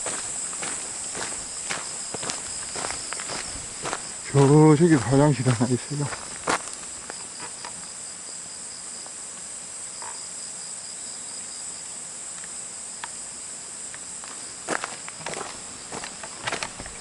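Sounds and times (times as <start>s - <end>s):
footsteps: 0.0s - 7.8s, 14.2s - 17.0s
insects chirring: 0.0s - 17.0s.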